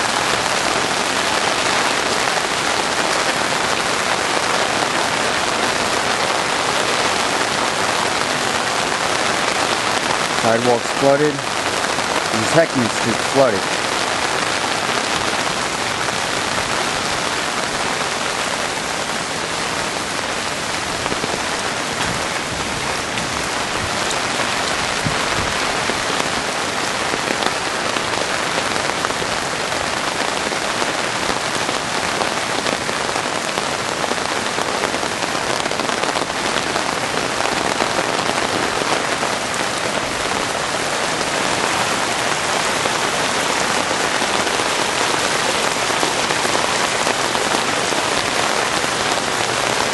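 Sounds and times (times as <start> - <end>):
rain falling steadily: 0.0 - 49.9.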